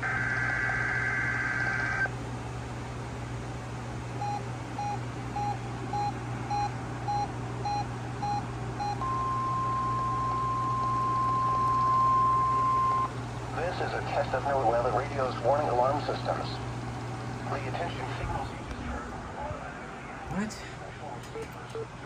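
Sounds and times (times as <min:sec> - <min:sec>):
steady warning alarm tone: 0:04.2 - 0:13.1.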